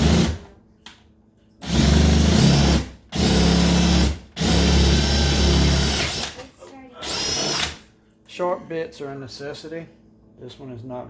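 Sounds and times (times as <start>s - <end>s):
power drill boring into wall: 0.0s - 0.4s, 1.6s - 6.4s, 7.0s - 7.8s.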